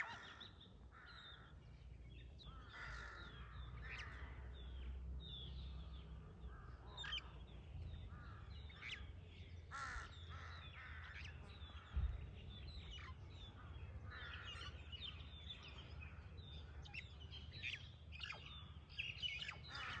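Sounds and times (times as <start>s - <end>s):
birds chirping: 0.0s - 20.0s
thump: 11.9s - 12.3s.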